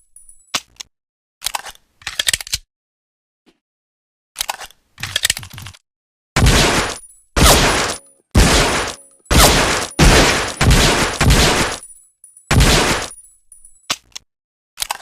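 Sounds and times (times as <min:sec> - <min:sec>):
pistol shots: 0:06.4 - 0:11.8, 0:12.5 - 0:13.1.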